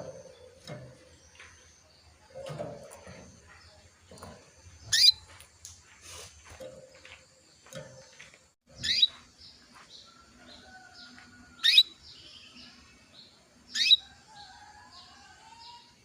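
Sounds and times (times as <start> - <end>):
canary chirps: 0.0 - 5.4, 7.7 - 16.0
canary twittering: 4.8 - 5.4, 8.7 - 9.2, 11.6 - 12.6, 13.7 - 14.2.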